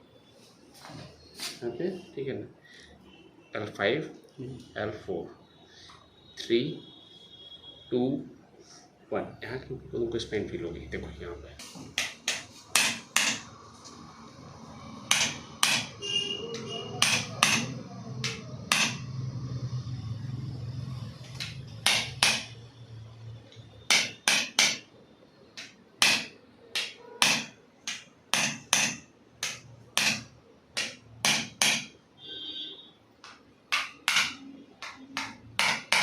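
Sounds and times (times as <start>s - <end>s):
sharp chiropractic knocks: 11.9s - 13.5s, 15.1s - 16.0s, 17.0s - 19.1s, 21.4s - 22.6s, 23.9s - 24.9s, 25.6s - 32.0s, 33.2s - 36.0s.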